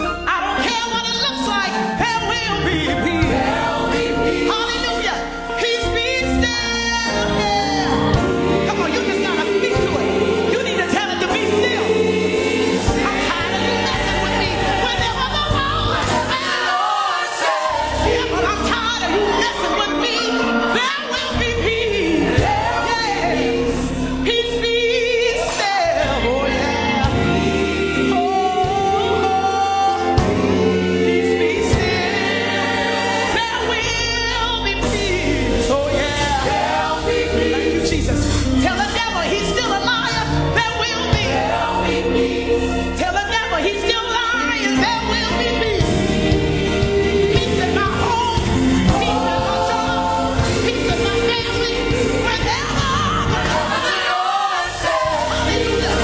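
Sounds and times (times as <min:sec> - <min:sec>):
band accompaniment: 0:00.0 - 0:56.0
gospel lead and choir singing: 0:00.0 - 0:56.0.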